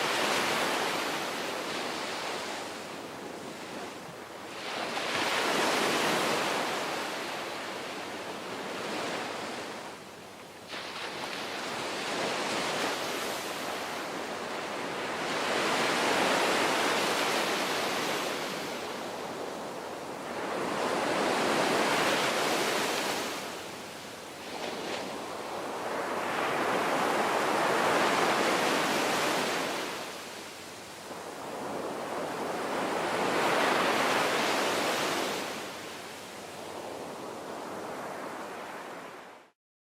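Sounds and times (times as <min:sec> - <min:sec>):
ocean waves breaking: 0:31.1 - 0:36.0.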